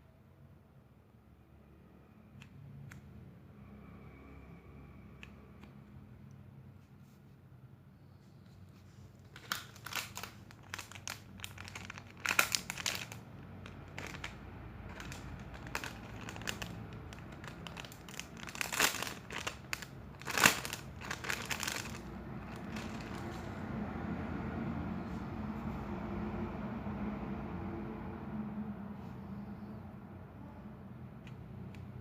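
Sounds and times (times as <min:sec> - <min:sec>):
squishy toys crinkling: 0:08.9 - 0:23.5.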